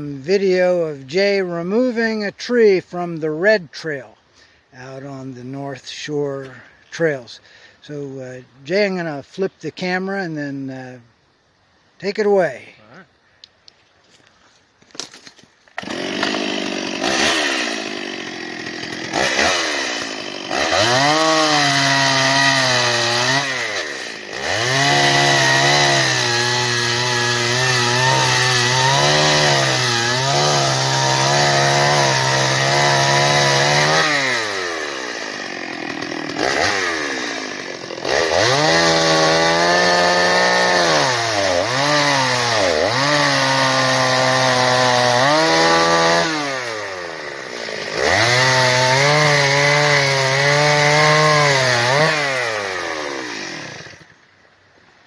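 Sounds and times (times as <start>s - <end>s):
chainsaw cutting wood: 14.9s - 54.2s.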